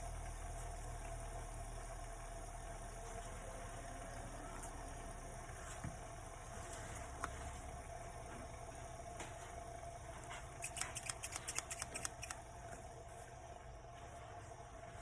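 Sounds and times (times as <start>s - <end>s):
faint steady hum: 0.0s - 15.0s
scissors snipping: 10.6s - 12.4s.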